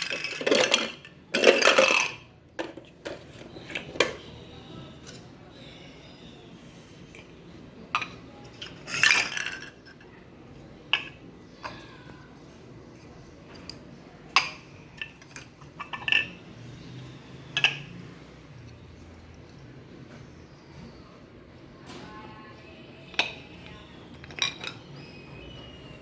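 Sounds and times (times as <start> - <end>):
toy pieces clinking together: 0.0 - 2.7, 8.0 - 10.0.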